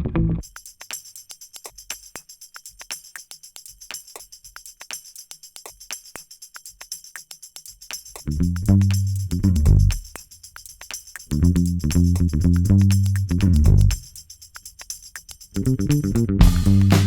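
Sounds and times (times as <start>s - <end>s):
quick regular percussion: 0.4s - 17.0s
band music: 15.6s - 17.0s.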